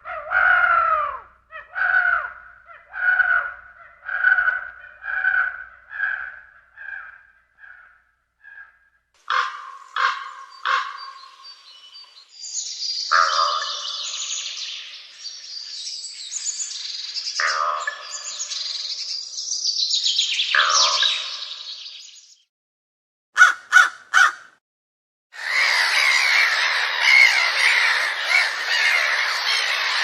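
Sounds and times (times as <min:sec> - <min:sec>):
crows cawing: 0:00.0 - 0:11.3, 0:13.1 - 0:14.0, 0:23.4 - 0:24.6, 0:25.4 - 0:30.0.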